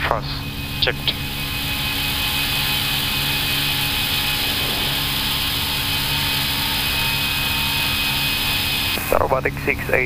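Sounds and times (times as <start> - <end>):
jet engines at climb thrust: 0.0 - 10.0
rush of airflow: 4.3 - 7.2.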